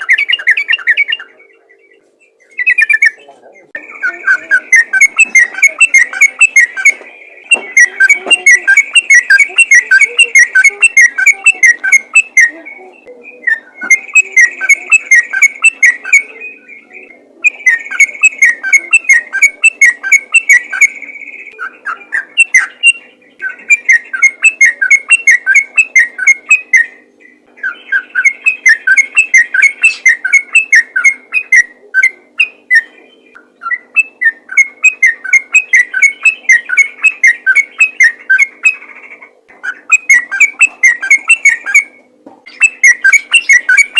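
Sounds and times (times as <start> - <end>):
bulbul singing chattering whistles: 0.0 - 43.9.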